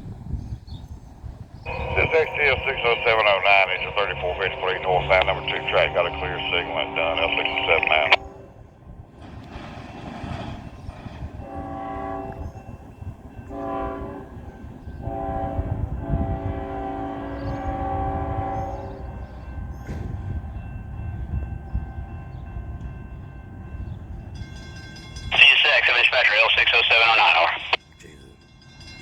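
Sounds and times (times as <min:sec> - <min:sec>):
train low rumble: 0:00.0 - 0:29.0
locomotive air horn blasts: 0:01.7 - 0:08.8, 0:11.4 - 0:19.2.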